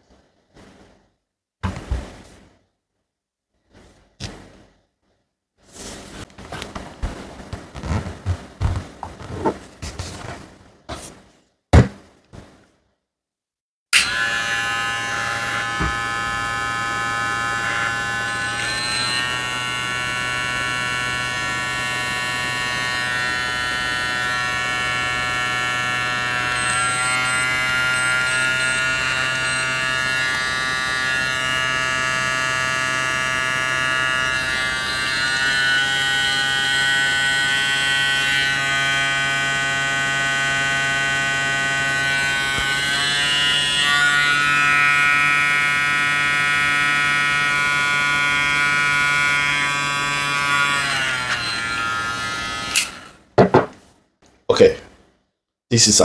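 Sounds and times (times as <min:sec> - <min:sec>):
hair clipper buzzing: 0:14.0 - 0:53.2.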